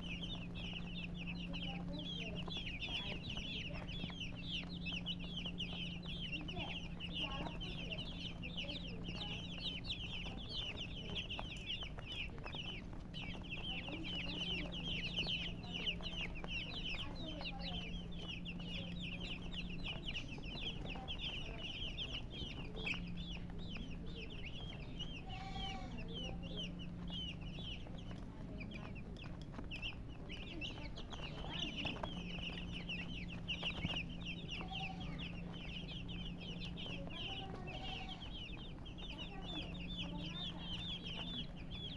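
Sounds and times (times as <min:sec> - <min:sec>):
hen calling: 0:00.0 - 0:26.8
chicks peeping: 0:00.0 - 0:41.9.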